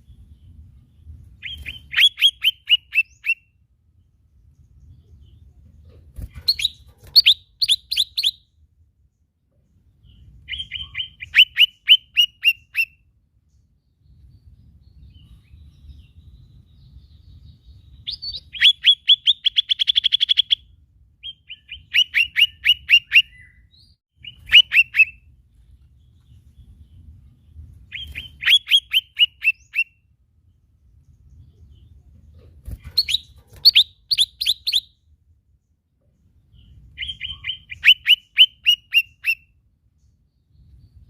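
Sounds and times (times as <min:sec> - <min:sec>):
bird chirping and trilling: 0:00.0 - 0:03.6, 0:06.2 - 0:08.5, 0:10.0 - 0:13.0, 0:14.1 - 0:25.3, 0:26.0 - 0:30.2, 0:32.6 - 0:35.1, 0:36.5 - 0:39.6.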